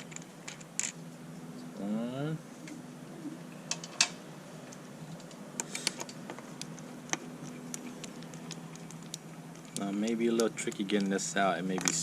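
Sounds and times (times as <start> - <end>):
faint low hum: 0.0 - 12.0
hand tools clicking on metal: 7.4 - 12.0.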